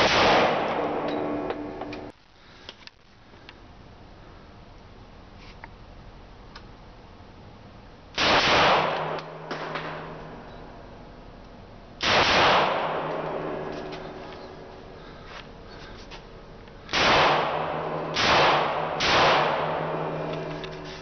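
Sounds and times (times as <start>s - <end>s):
pistol shots with echo: 0.0s - 1.5s, 8.2s - 10.4s, 12.0s - 14.0s, 16.9s - 20.4s.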